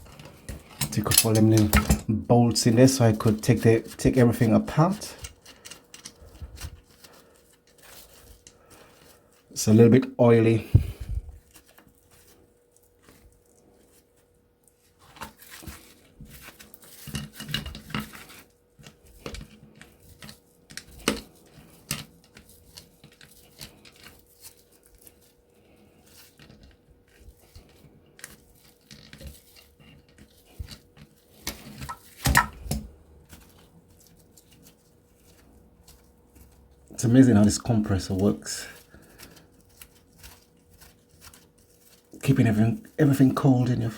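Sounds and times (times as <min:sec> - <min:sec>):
metal tools clinking and knocking: 0:00.8 - 0:02.1.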